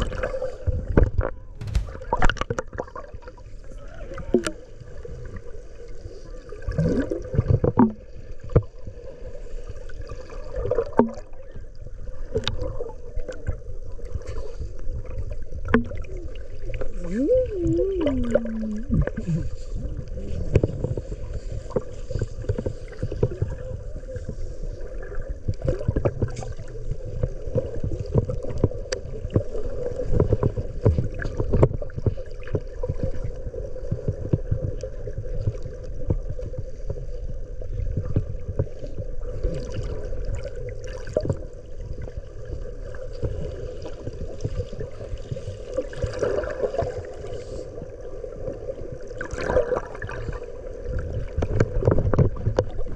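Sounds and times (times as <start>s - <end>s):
water sloshing around boat: 0.0s - 9.1s, 12.3s - 52.9s
continuous low rumble: 0.8s - 2.5s
knocks on boat: 1.5s - 2.3s.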